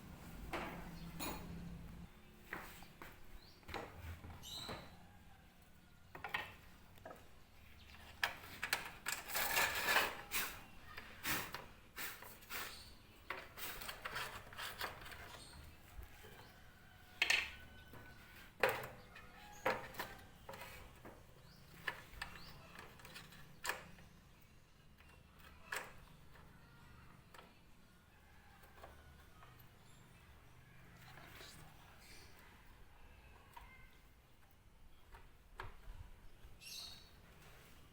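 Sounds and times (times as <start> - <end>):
wood and tools knocking: 17.2 - 23.9.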